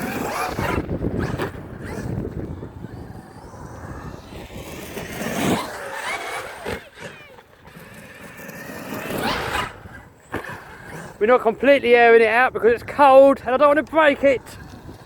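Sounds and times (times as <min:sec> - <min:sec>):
electric motor whining: 0:00.0 - 0:11.2.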